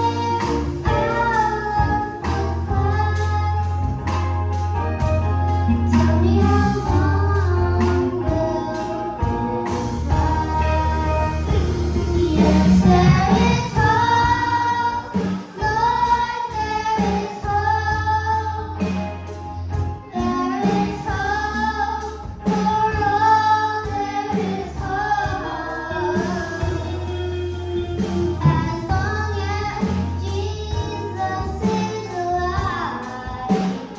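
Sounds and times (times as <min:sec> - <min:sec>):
instrumental accompaniment with bass: 0:00.0 - 0:33.9
children's choir singing: 0:10.1 - 0:18.5.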